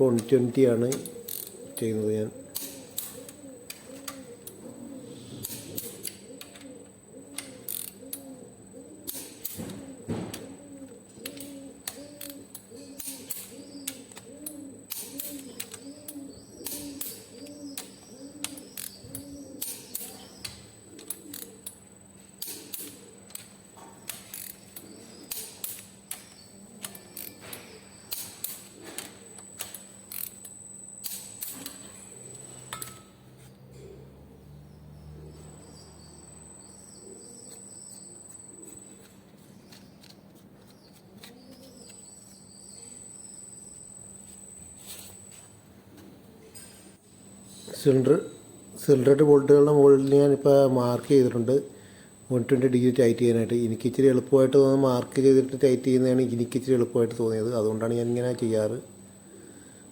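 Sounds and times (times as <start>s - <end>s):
ratchet wrench clicking: 24.1s - 24.6s, 29.6s - 31.8s.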